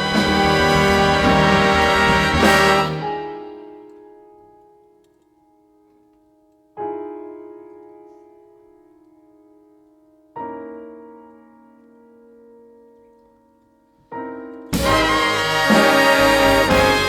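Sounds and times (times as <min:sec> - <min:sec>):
full-band chord: 0:00.0 - 0:03.7, 0:14.7 - 0:17.0
piano chord ringing: 0:00.0 - 0:04.9.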